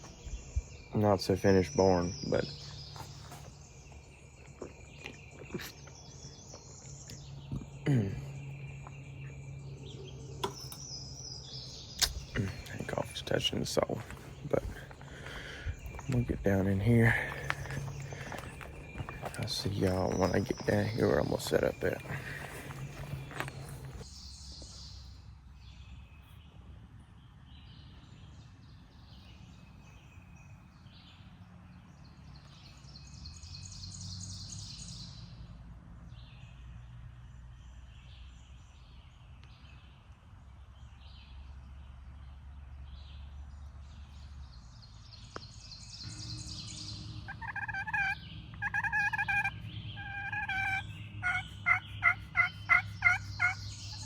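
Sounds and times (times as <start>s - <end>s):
songbirds trilling: 0.0s - 26.6s, 27.3s - 54.0s
turkey yelping: 17.2s - 24.0s, 47.2s - 54.0s.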